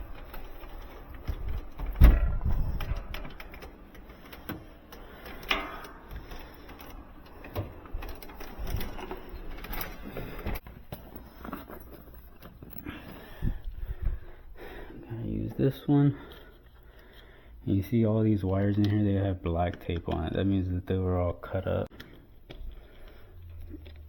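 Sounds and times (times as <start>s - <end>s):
knocks clatters and rattles: 0.0s - 14.3s.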